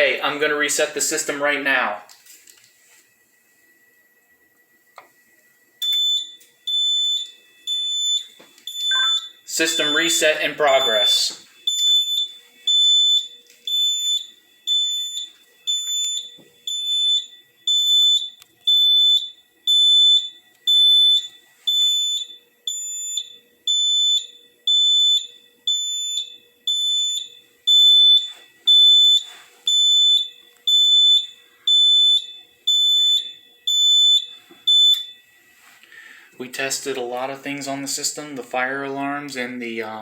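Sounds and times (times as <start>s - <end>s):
high-pitched fire alarm beeping: 5.8s - 35.3s.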